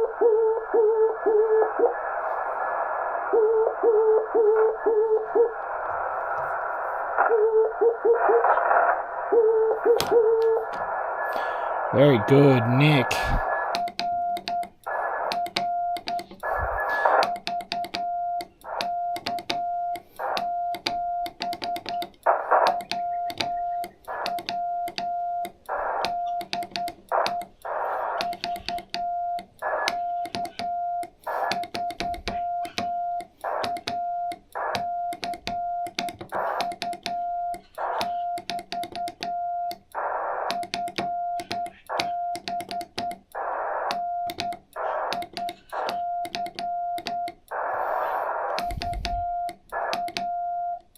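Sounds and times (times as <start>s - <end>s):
morse code tone: 12.0s - 50.9s
sharp clicks: 13.7s - 47.8s, 48.4s - 50.9s.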